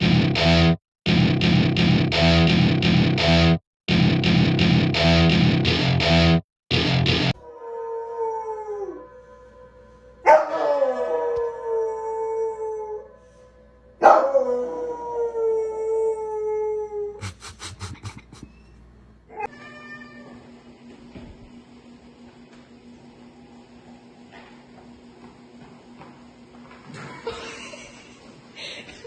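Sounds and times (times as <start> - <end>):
dog howling: 7.4 - 13.1, 14.0 - 17.2.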